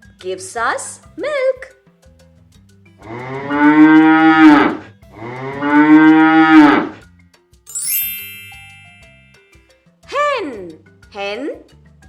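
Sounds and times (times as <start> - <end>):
cow mooing: 3.0 - 7.0
bright chime: 7.7 - 9.5.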